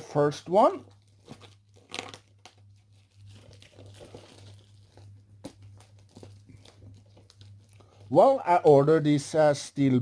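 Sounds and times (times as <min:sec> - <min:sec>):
plastic wrapping crinkling and tearing: 0:00.5 - 0:08.5.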